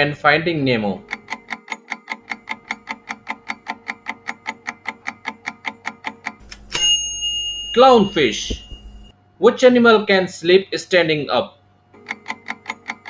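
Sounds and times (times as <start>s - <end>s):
clock-like timer ticking: 0.6s - 7.0s, 12.0s - 13.0s
bell-like ding: 6.4s - 9.1s.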